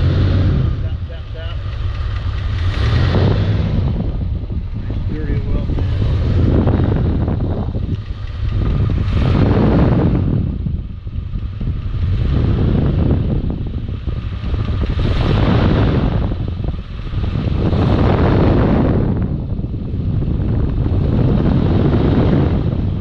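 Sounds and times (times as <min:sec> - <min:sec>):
truck engine idling: 0:00.0 - 0:18.0
engine ticking: 0:00.0 - 0:23.0
fan air noise: 0:00.0 - 0:23.0.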